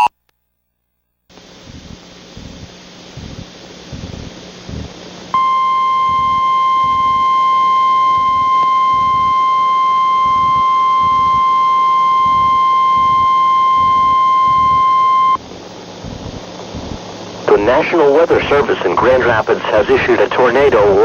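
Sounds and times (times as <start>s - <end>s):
steady electronic alert tone: 4.0s - 17.8s.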